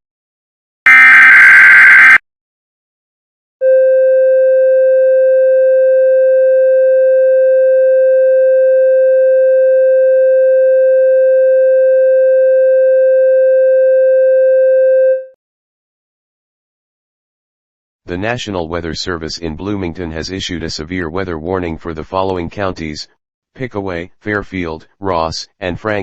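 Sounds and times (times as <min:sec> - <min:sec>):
steady electronic alert tone: 0:00.9 - 0:02.2.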